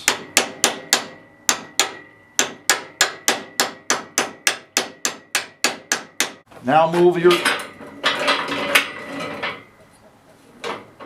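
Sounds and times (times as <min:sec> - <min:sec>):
hammer striking metal: 0:00.0 - 0:06.5.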